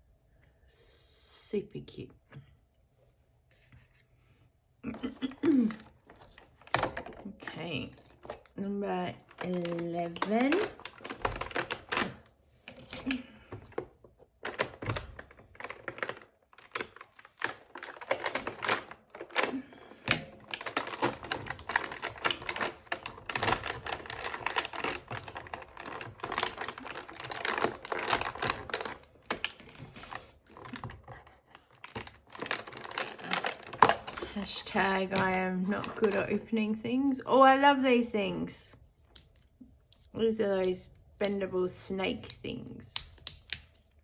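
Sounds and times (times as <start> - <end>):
packaging clicks and crackles: 5.0 - 36.5.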